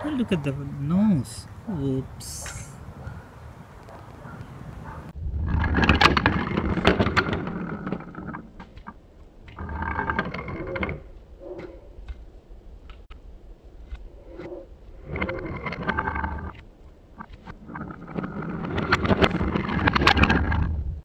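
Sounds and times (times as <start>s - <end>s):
toy train clattering on wooden track: 5.5s - 11.8s, 15.0s - 20.7s.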